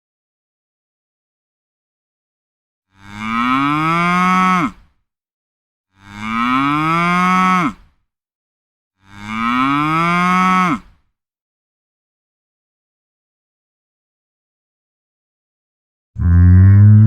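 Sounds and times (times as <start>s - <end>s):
cow mooing: 3.0s - 4.8s, 6.0s - 7.8s, 9.0s - 10.9s, 16.2s - 17.0s.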